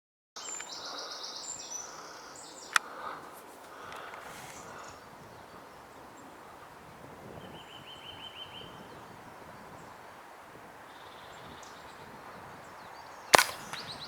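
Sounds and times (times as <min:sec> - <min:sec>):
small bird chirping trills: 0:00.4 - 0:03.2, 0:03.8 - 0:14.0
air rifle firing: 0:13.3 - 0:14.0.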